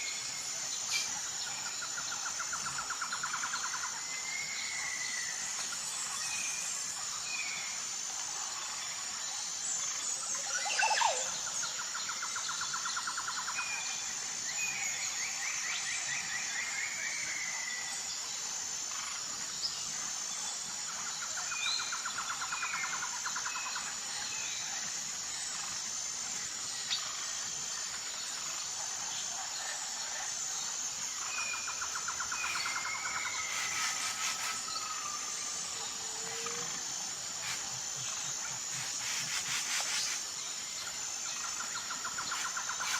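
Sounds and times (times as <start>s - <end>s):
high-pitched insect drone: 0.0s - 42.9s.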